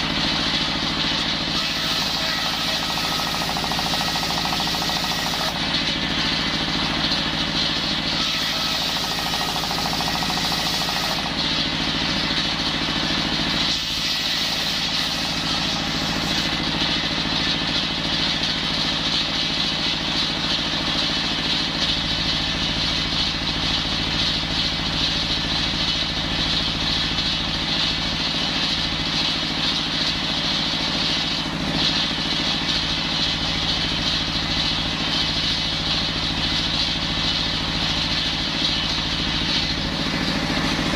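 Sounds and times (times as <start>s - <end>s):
high whine from saw blade: 0.0s - 17.5s
engine-driven saw cutting wood: 0.0s - 40.9s.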